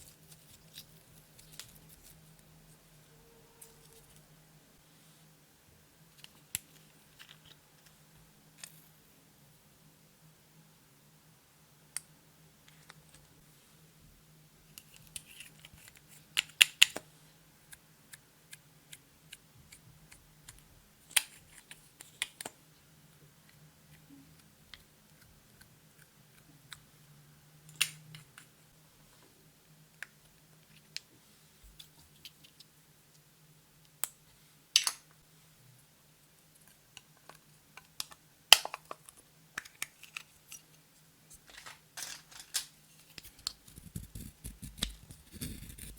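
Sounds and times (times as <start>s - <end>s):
faint low hum: 0.0s - 16.4s.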